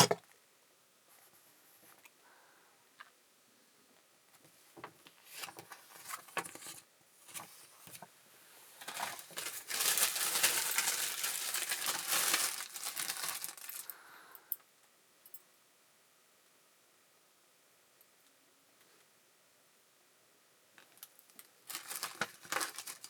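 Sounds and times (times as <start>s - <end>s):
packaging crinkling and rustling: 8.8s - 14.0s, 21.0s - 23.0s.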